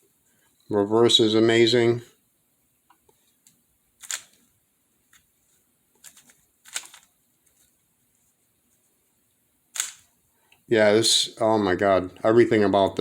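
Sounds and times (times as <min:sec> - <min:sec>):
puzzle cube clacking: 0:04.0 - 0:04.4, 0:06.0 - 0:07.6, 0:09.8 - 0:10.1.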